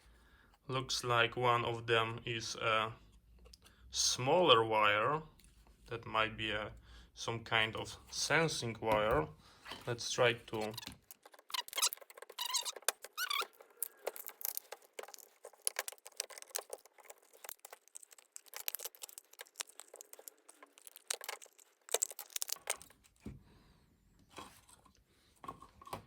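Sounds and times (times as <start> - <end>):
battery cells being pried out: 10.6 - 23.2.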